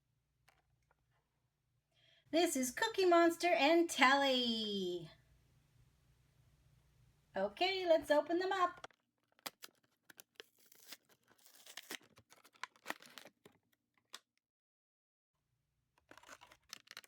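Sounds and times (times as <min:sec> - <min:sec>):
plastic crinkling and tearing: 0:08.8 - 0:14.2, 0:16.0 - 0:17.0
toy packaging being opened: 0:08.8 - 0:14.3, 0:16.0 - 0:17.0.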